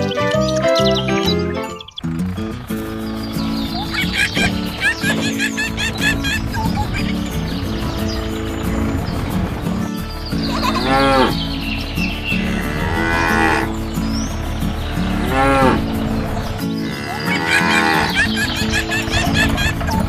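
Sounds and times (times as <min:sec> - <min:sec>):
background music: 0:00.0 - 0:20.0
cartoon cow mooing: 0:10.6 - 0:11.4, 0:12.5 - 0:13.7, 0:15.2 - 0:15.8, 0:16.8 - 0:18.4.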